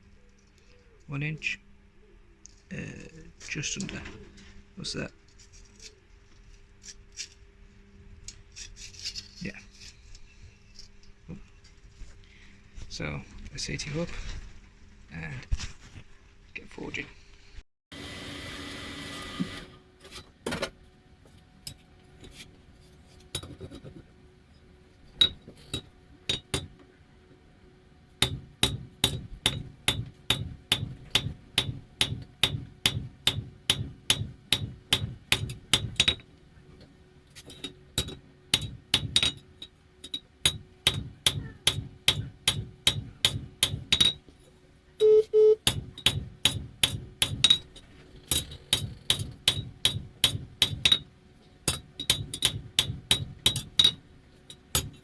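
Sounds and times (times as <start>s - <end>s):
hammer striking steel on anvil: 28.2s - 36.2s, 38.0s - 39.4s, 40.0s - 44.2s, 45.6s - 47.7s, 48.7s - 51.1s, 51.7s - 54.0s.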